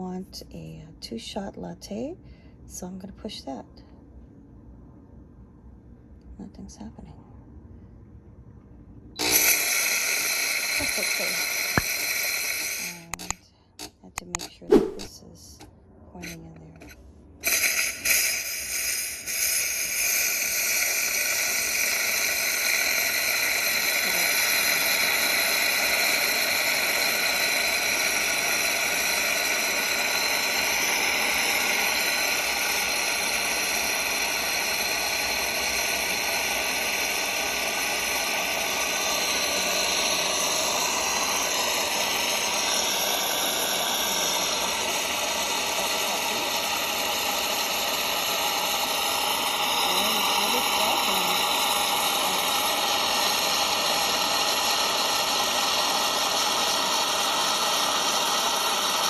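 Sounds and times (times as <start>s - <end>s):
espresso machine hissing: 9.2s - 13.3s, 17.4s - 59.0s.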